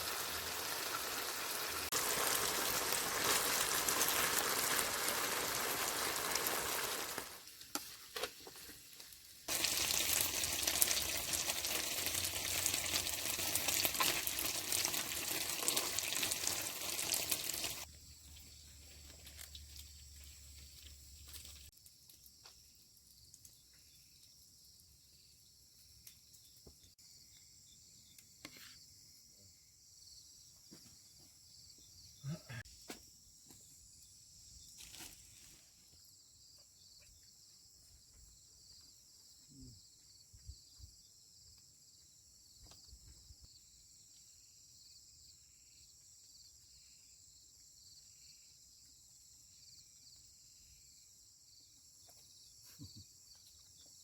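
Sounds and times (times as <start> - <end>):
faint insect chirping: 16.5 - 54.0.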